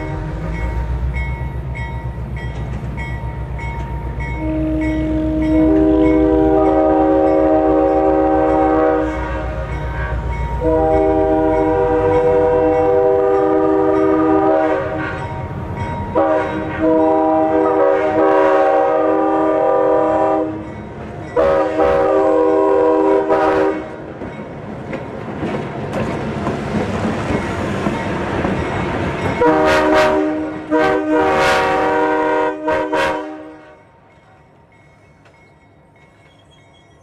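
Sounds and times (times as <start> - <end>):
train air horn chord: 4.4 - 15.3, 16.2 - 20.7, 21.4 - 24.0, 29.4 - 33.8.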